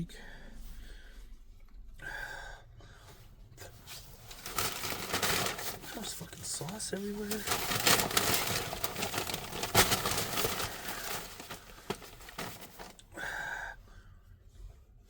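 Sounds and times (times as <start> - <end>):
paper wrapper crinkling: 3.9 - 13.1.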